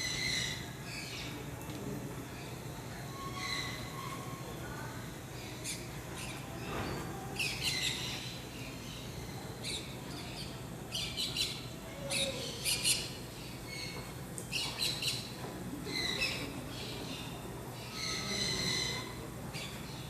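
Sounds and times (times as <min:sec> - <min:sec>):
birds chirping and squawking: 0:00.0 - 0:01.4, 0:03.1 - 0:04.5, 0:07.4 - 0:20.0.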